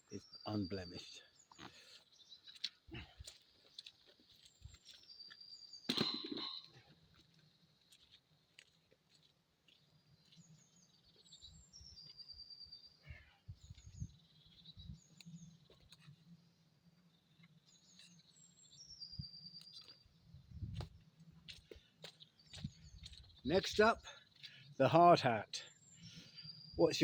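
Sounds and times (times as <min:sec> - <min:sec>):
songbird singing: 0:00.0 - 0:27.0.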